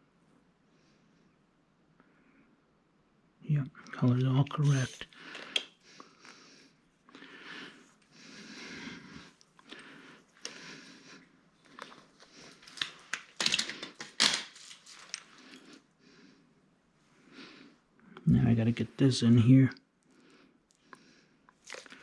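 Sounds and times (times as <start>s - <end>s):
cable rustling: 11.6s - 15.8s, 21.6s - 22.0s.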